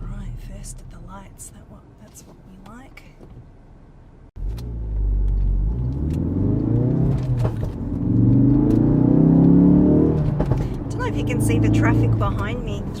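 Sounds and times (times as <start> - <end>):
car exhaust accelerating hard: 4.4 - 13.0
exhaust pops and crackles: 4.4 - 13.0.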